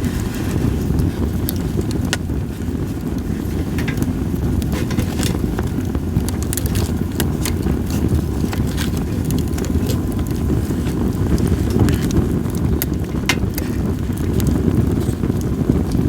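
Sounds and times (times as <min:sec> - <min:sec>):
campfire crackling and popping: 0:00.0 - 0:16.0
low rumble of wind: 0:00.0 - 0:16.0.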